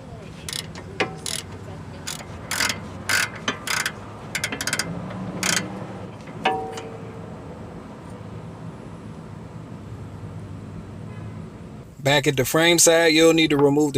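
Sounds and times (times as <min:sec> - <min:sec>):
hand ratchet clicking: 0:00.5 - 0:06.9
sharp metallic clank: 0:00.5 - 0:07.2.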